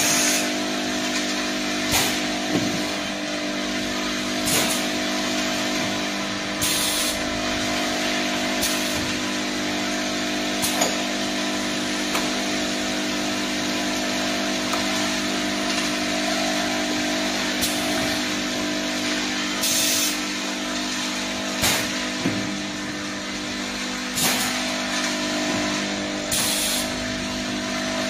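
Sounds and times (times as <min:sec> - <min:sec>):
steady motor hum: 0:00.0 - 0:28.0.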